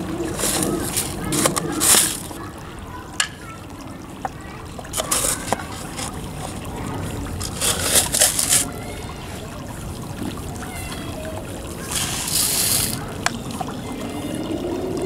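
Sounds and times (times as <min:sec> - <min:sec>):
birdseed pouring rattle: 0:00.2 - 0:02.4, 0:07.4 - 0:08.7, 0:11.9 - 0:13.0.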